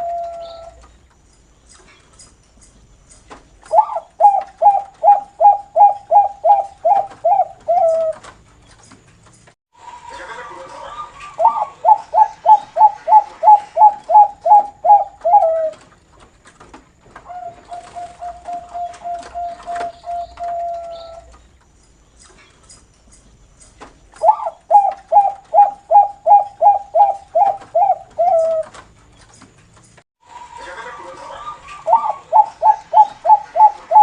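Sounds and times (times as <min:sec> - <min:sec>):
dove cooing: 0:00.0 - 0:00.8, 0:03.7 - 0:08.3, 0:10.9 - 0:15.8, 0:17.2 - 0:21.3, 0:24.2 - 0:28.8, 0:30.6 - 0:34.0
dove rolling trill: 0:00.0 - 0:00.8, 0:03.7 - 0:08.3, 0:09.8 - 0:15.9, 0:17.2 - 0:21.4, 0:24.2 - 0:28.8, 0:30.3 - 0:34.0.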